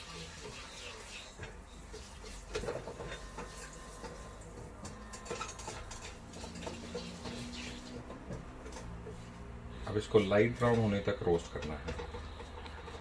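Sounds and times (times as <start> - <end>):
spatula scraping a pan: 0.0 - 11.0.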